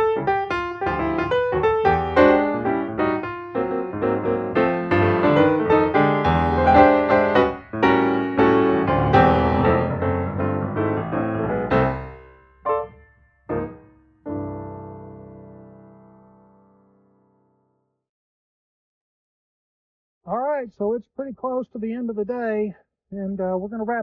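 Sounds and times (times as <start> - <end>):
piano music: 0.0 - 17.6.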